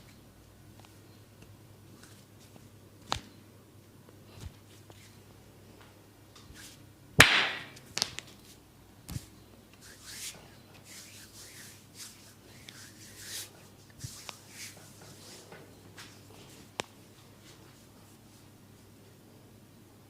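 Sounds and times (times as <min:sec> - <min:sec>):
hand slapping skin: 0:03.0 - 0:03.3, 0:07.2 - 0:08.3
palms rubbing over skin: 0:09.2 - 0:15.5.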